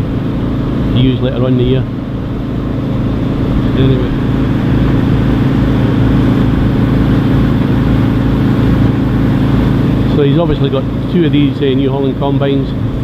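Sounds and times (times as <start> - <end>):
diesel engine humming under load: 0.0 - 13.0.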